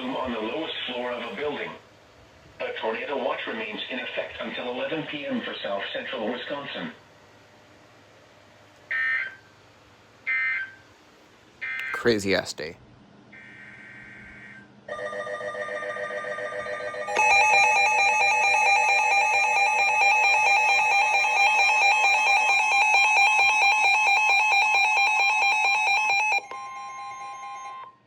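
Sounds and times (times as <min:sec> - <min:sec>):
steady alarm tone: 0:13.4 - 0:28.0.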